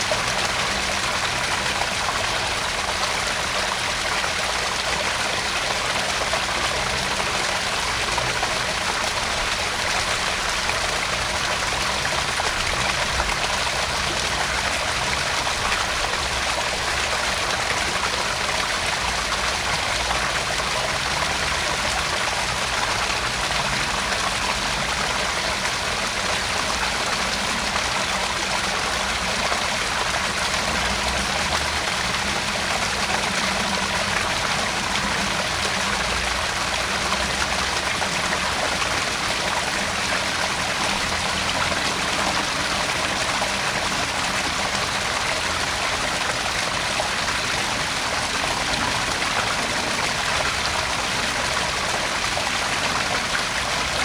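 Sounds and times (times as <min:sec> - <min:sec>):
water trickling into pond: 0:00.0 - 0:54.0.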